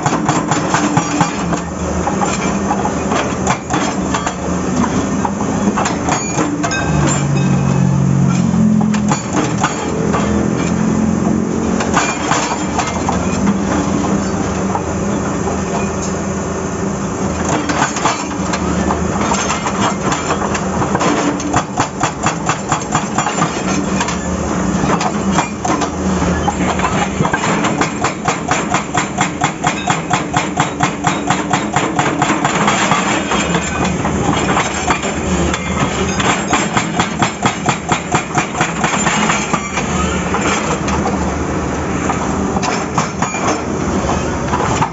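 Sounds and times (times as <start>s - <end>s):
hydraulic breaker hammer pounding: 0.0s - 7.4s, 17.4s - 24.2s, 24.8s - 41.2s, 42.0s - 43.8s
excavator diesel engine running: 0.0s - 44.9s.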